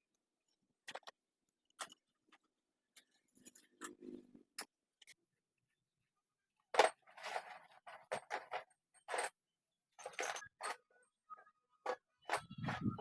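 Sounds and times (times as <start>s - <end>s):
metal clinking and knocking: 6.7s - 11.0s, 11.7s - 13.0s
metal scraping: 12.2s - 13.0s.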